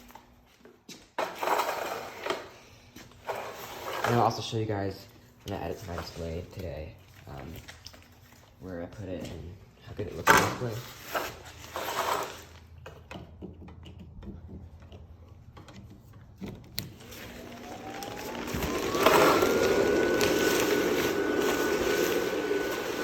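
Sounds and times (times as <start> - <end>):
blower fan whining: 16.7 - 23.0.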